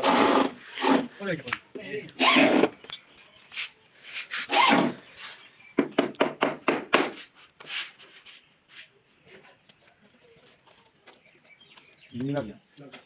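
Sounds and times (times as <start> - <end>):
hand tool scraping wood: 0.0 - 1.5, 4.0 - 5.4.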